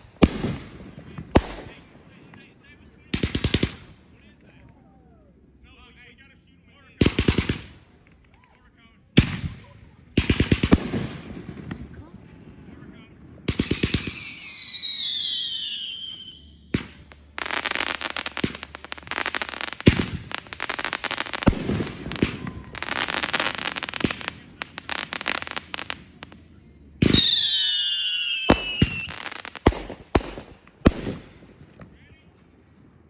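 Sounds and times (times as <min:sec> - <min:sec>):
fireworks bangs: 0:00.0 - 0:02.4, 0:09.2 - 0:26.4, 0:27.0 - 0:32.0
fireworks crackling and popping: 0:00.0 - 0:02.4, 0:03.1 - 0:04.7, 0:07.0 - 0:08.6, 0:09.2 - 0:12.4, 0:13.4 - 0:32.0
fireworks whistles falling: 0:13.5 - 0:24.3, 0:27.0 - 0:29.9.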